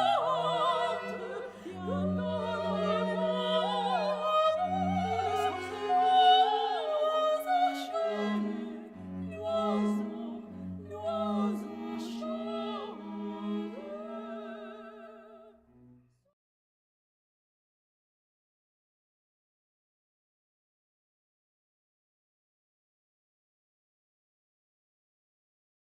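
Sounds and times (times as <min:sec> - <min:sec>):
operatic singing: 0:00.0 - 0:15.5.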